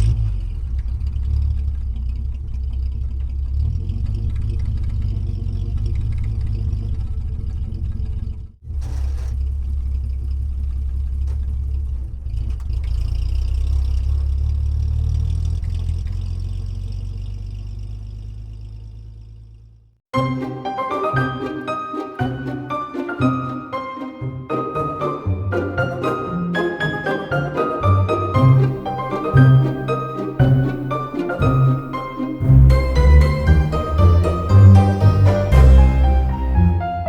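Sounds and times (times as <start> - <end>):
heavy vehicle engine rumbling: 20.2 - 37.0.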